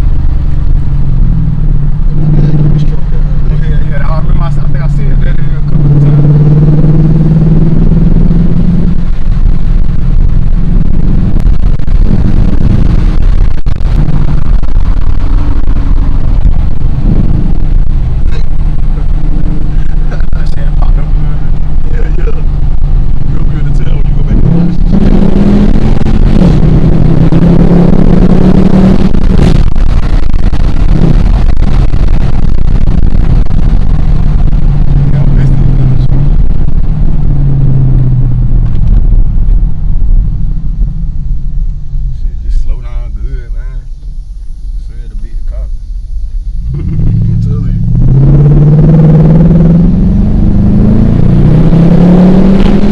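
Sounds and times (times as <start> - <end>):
car engine droning while driving: 0.0 - 52.9
road noise rushing: 0.0 - 52.9
wind buffeting microphone: 5.4 - 42.8.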